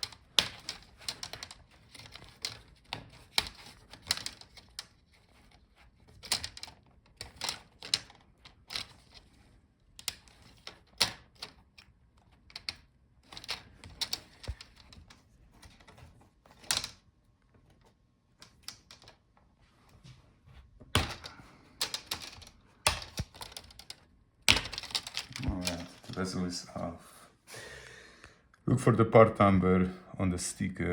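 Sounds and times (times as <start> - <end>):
plastic clips clicking and snapping: 0.0 - 4.9, 20.9 - 26.2.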